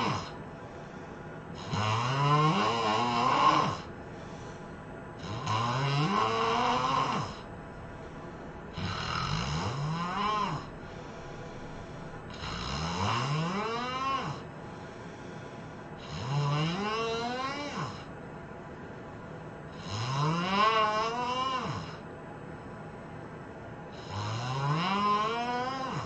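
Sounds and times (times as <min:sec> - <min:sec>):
person snoring loudly: 0:00.0 - 0:00.4, 0:01.6 - 0:03.9, 0:05.2 - 0:14.5, 0:16.0 - 0:18.1, 0:19.7 - 0:22.0, 0:23.9 - 0:26.0
quiet breaths: 0:00.0 - 0:02.4, 0:03.0 - 0:20.0.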